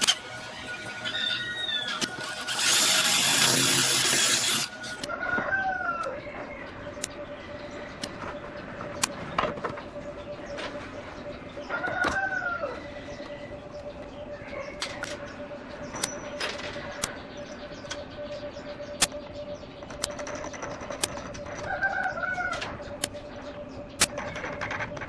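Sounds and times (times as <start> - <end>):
sharp clicks and taps: 19.0 - 23.2.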